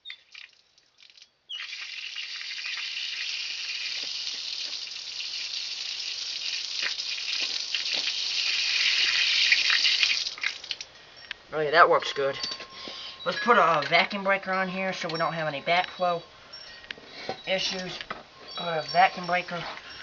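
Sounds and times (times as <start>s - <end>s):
water rushing from drain valve: 0.2s - 10.9s.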